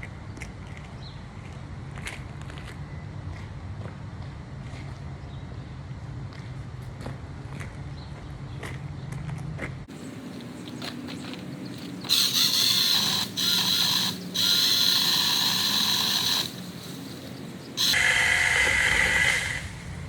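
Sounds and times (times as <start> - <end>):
electric mini chainsaw whine: 11.8 - 20.0.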